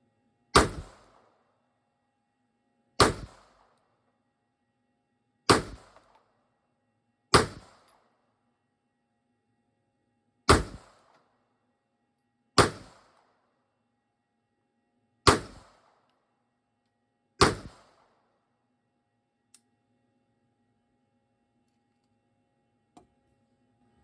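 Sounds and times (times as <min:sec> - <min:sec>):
pistol shots: 0:00.6 - 0:01.3, 0:03.0 - 0:03.7, 0:05.5 - 0:06.2, 0:07.3 - 0:08.1, 0:10.5 - 0:11.2, 0:12.6 - 0:13.3, 0:15.2 - 0:16.0, 0:17.4 - 0:18.2.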